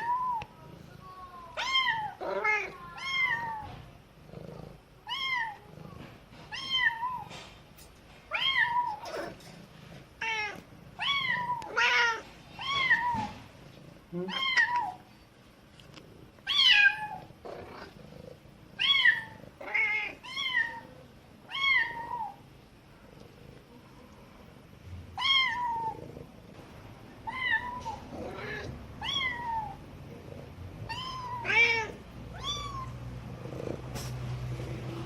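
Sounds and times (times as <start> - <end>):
mother cat calling: 0.0 - 3.8, 27.2 - 29.9, 30.8 - 34.1
kitten meowing: 30.9 - 33.0.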